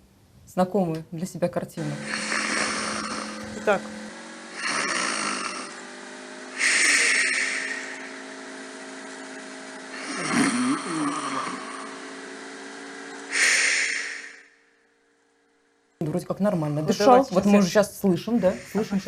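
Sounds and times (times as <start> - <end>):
steady low hum: 0.0 - 19.0
man breathing and snoring: 2.0 - 5.8, 6.5 - 8.3, 9.9 - 12.1, 13.3 - 14.5.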